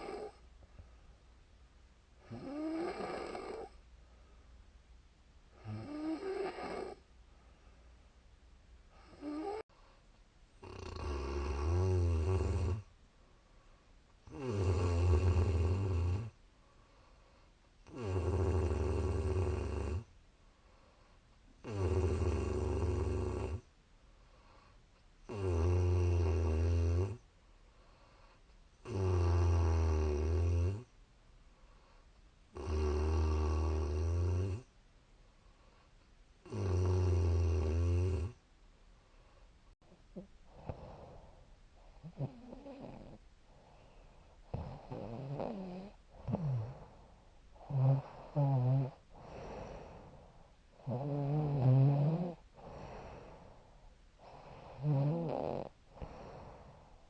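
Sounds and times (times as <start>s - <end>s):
woman snoring: 0.0s - 0.4s, 2.2s - 3.8s, 5.6s - 7.0s, 9.0s - 9.7s, 10.6s - 12.9s, 14.3s - 16.4s, 17.9s - 20.1s, 21.6s - 23.6s, 25.3s - 27.2s, 28.8s - 30.9s, 32.6s - 34.7s, 36.4s - 38.4s, 40.2s - 41.3s, 42.0s - 43.2s, 44.5s - 47.0s, 47.6s - 50.2s, 50.8s - 53.5s, 54.2s - 56.9s.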